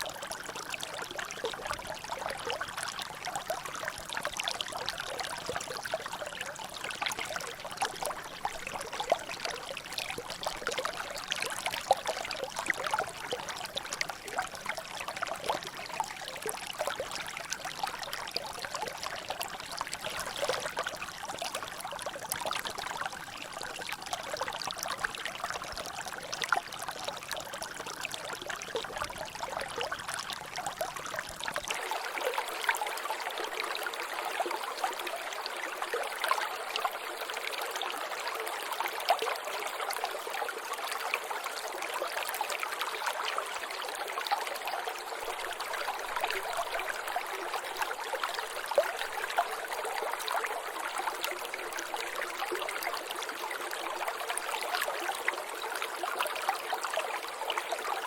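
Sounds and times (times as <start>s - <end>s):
water trickling: 0.0s - 58.0s.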